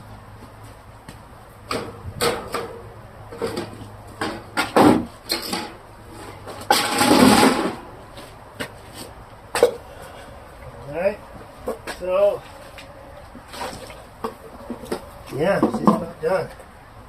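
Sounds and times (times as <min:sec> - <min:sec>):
water splashing: 0:12.5 - 0:15.0
refrigerator parts knocking: 0:14.2 - 0:16.2.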